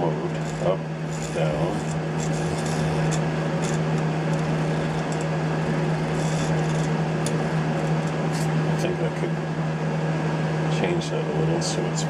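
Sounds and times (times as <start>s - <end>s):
milling machine humming: 0.0s - 9.0s.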